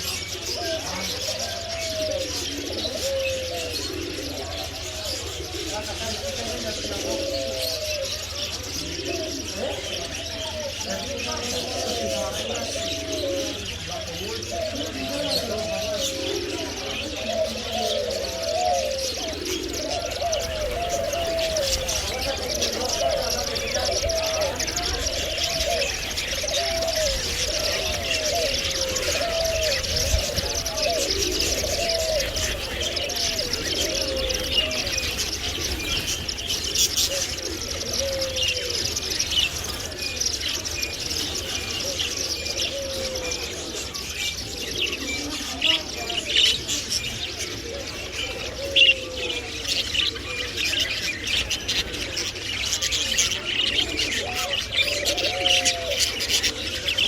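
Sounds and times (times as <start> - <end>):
caged birds chirping: 0.0 - 57.0
low wavering cooing: 0.0 - 57.0.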